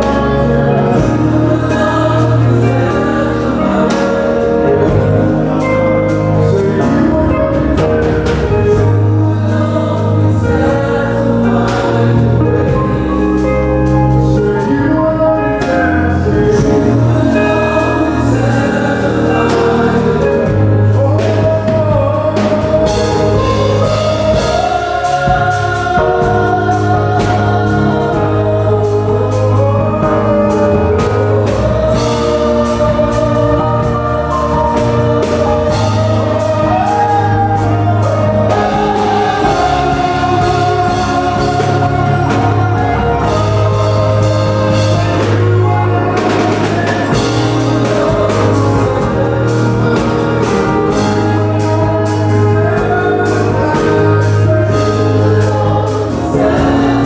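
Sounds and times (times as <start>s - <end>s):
choir singing: 0.0s - 57.0s
sustained bass notes: 0.0s - 57.0s
percussion beat: 18.4s - 57.0s.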